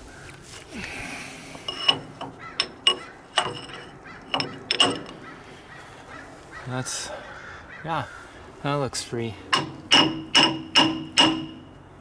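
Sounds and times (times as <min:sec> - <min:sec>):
metal-on-metal clanks: 0:01.5 - 0:05.4, 0:09.5 - 0:11.8.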